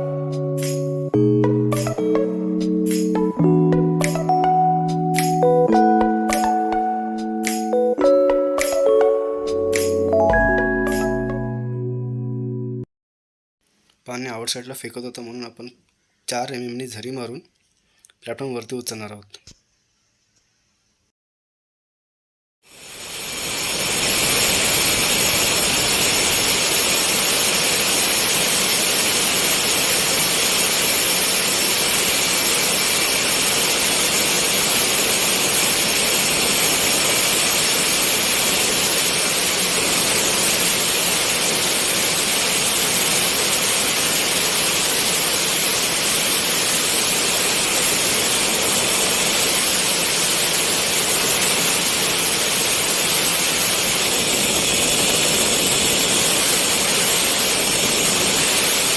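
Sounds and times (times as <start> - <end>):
angle grinder whining: 51.5 - 58.9.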